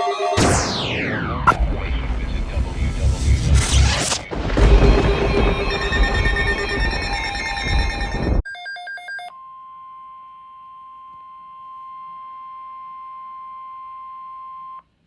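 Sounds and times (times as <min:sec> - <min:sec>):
steady high alarm tone: 0:00.0 - 0:09.2
rapid electronic beeps: 0:00.4 - 0:08.4.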